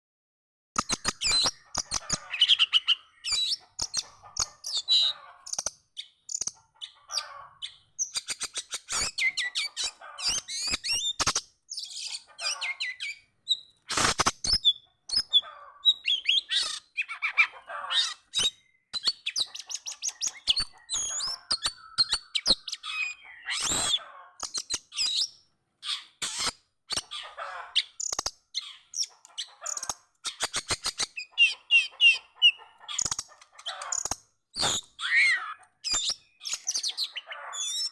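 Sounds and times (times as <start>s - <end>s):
sharp clicks: 0.8s - 2.2s, 3.3s - 4.6s, 28.0s - 28.4s, 33.0s - 34.9s
songbird chirping: 0.9s - 13.9s, 14.5s - 26.2s, 26.9s - 37.9s.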